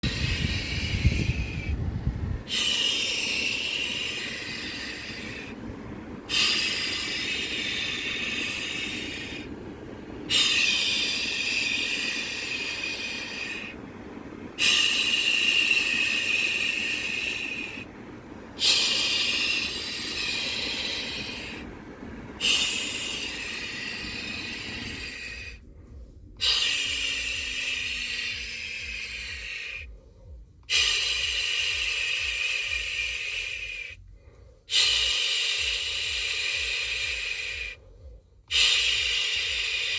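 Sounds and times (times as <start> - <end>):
phone hissing in bursts: 2.5 - 5.6, 6.3 - 9.6, 10.3 - 25.6.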